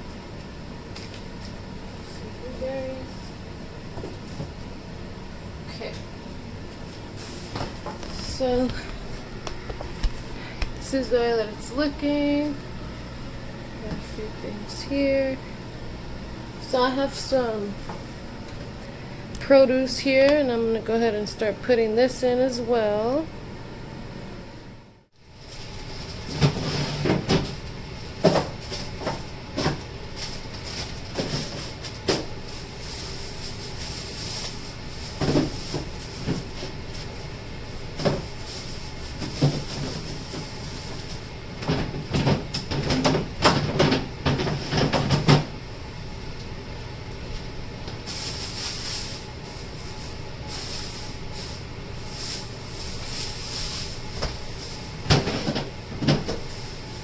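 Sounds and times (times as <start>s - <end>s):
rustling plastic: 6.3s - 8.7s, 25.2s - 45.8s, 47.3s - 57.0s.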